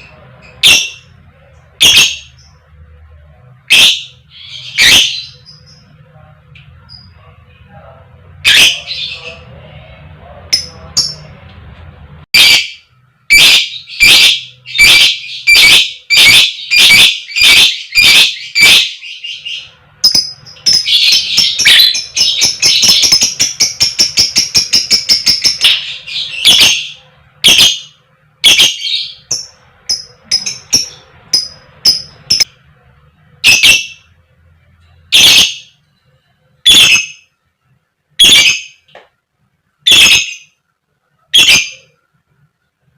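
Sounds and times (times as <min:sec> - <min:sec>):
lovebird shrill calls: 0:12.4 - 0:19.4, 0:20.0 - 0:26.8, 0:27.4 - 0:32.4, 0:33.4 - 0:34.0, 0:35.1 - 0:35.7, 0:36.7 - 0:37.2, 0:38.2 - 0:38.8, 0:39.9 - 0:40.5, 0:41.4 - 0:41.8.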